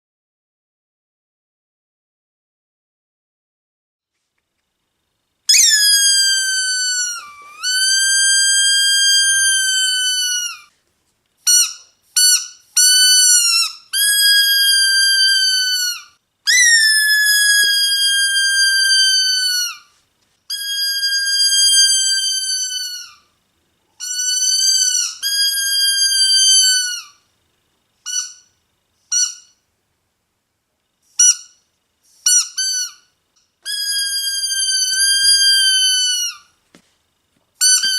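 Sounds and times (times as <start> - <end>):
squeaky dog toy squeaking: 5.5 - 10.7, 11.4 - 19.9, 20.5 - 23.3, 24.0 - 27.2, 28.1 - 28.5, 29.1 - 29.6, 31.2 - 31.6, 32.2 - 36.5, 37.6 - 37.9.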